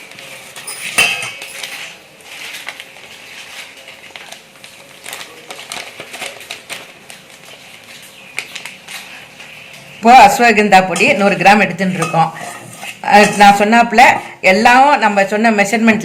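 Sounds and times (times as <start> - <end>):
spoon scraping a container: 10.9 - 13.5.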